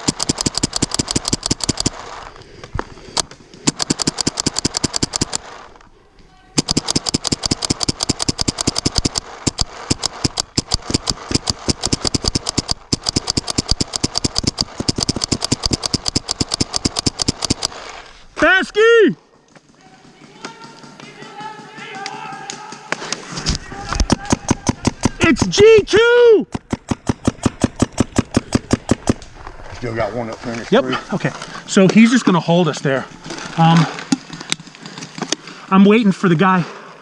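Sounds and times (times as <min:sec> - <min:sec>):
paintball markers firing: 0:00.0 - 0:05.8, 0:06.6 - 0:18.1, 0:19.9 - 0:29.6.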